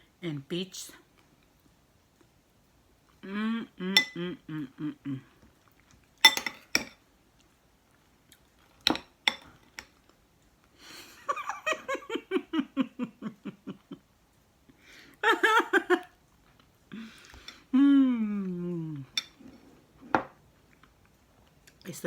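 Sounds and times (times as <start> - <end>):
person laughing: 11.0 - 14.0, 15.2 - 16.2.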